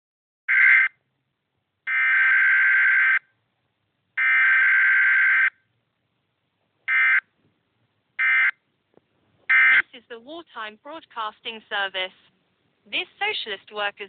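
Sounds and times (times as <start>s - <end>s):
emergency alert buzzing beep: 1.9s - 3.3s, 4.2s - 5.6s, 9.5s - 9.9s.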